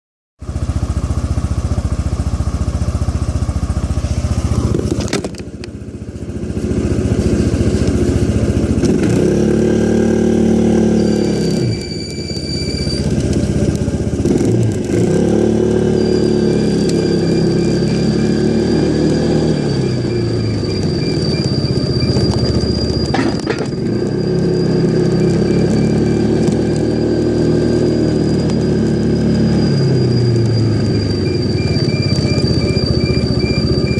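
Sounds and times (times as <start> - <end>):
scooter engine revving: 0.4 - 12.0, 12.6 - 33.9
thin high whine: 15.2 - 33.9.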